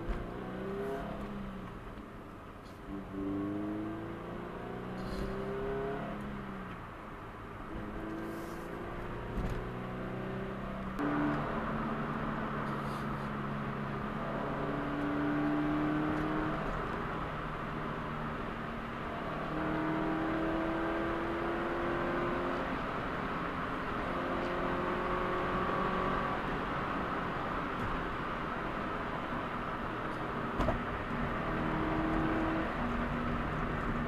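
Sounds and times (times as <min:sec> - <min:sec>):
car engine running: 0:07.6 - 0:15.1.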